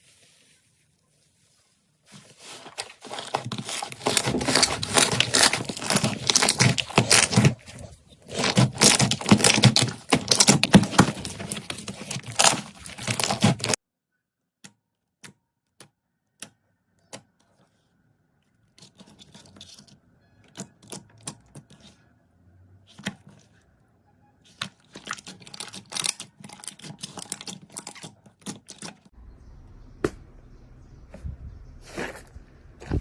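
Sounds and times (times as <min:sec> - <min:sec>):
slime clicking and crackling: 0:08.3 - 0:13.8
low steady rumble: 0:29.2 - 0:33.0.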